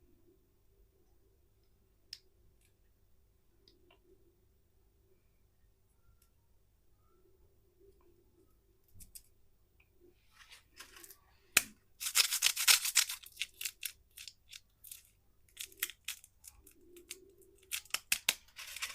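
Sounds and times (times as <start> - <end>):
candy wrapper crinkling and tearing: 12.0 - 18.9.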